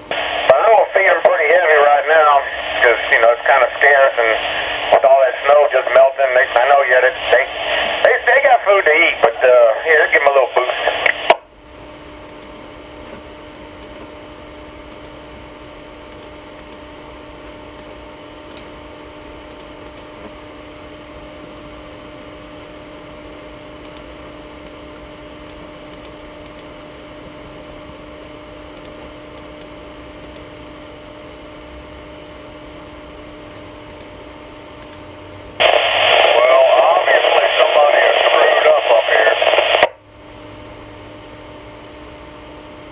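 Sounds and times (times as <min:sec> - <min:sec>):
low hum: 0:00.0 - 0:13.7, 0:32.4 - 0:42.8.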